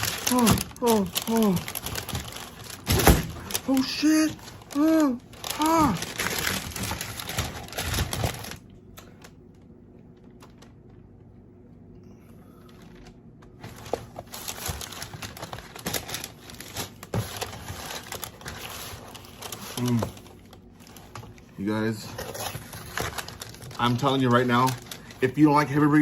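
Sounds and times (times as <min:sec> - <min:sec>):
paper bag and wrappers crinkling: 0:00.0 - 0:09.3, 0:10.0 - 0:11.0, 0:12.5 - 0:26.0.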